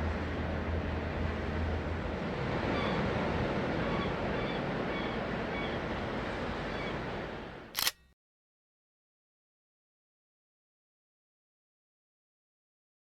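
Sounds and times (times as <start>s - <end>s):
ocean surf washing: 0.0s - 7.8s
sharp click: 7.8s - 8.2s.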